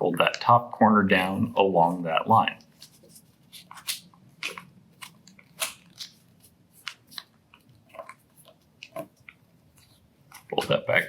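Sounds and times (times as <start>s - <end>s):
paper crinkling and rustling: 2.6s - 11.0s.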